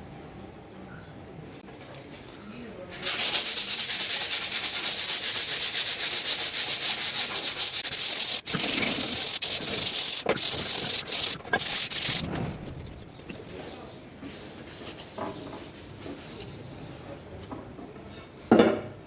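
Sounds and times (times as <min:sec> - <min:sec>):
sanding rusted metal: 0:03.0 - 0:13.3, 0:14.3 - 0:16.9.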